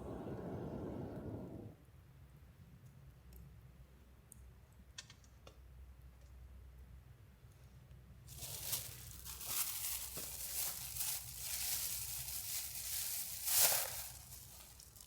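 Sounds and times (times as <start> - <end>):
bag crinkling: 8.3 - 15.0.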